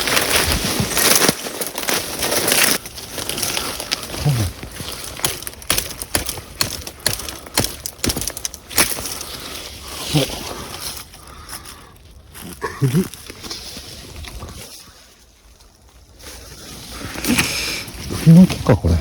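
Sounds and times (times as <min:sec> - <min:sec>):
twigs snapping: 0:00.0 - 0:10.0
footsteps crunching through leaves: 0:00.0 - 0:17.2.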